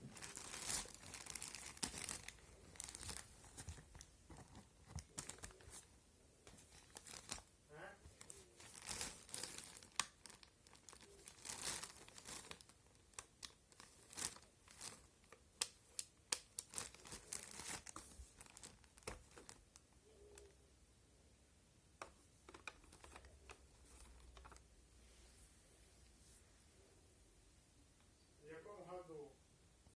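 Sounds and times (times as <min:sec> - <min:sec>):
packaging crinkling and rustling: 0:00.0 - 0:20.5.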